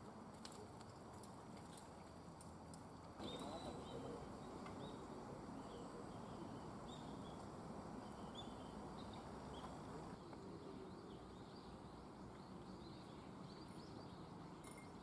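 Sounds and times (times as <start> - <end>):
steady low hiss: 0.0 - 15.0
small birds chirping: 3.2 - 15.0.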